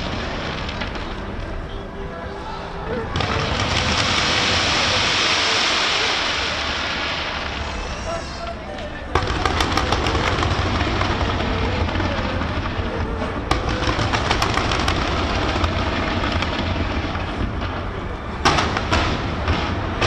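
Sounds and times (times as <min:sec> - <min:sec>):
fireworks bangs: 0:00.0 - 0:01.8, 0:02.9 - 0:20.0
fireworks crackling and popping: 0:00.0 - 0:01.9, 0:03.0 - 0:20.0.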